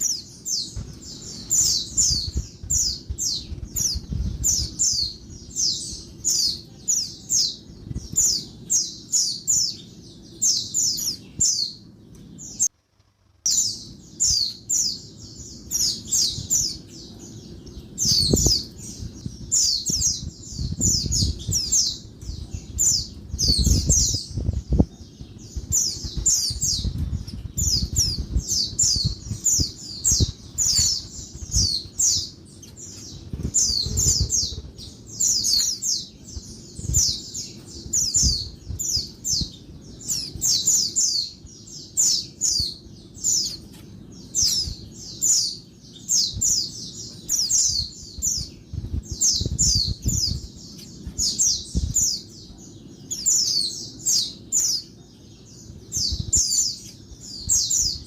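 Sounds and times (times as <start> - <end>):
bird chirping high: 0.0 - 12.7, 13.5 - 58.0
low rumbling: 15.1 - 35.5.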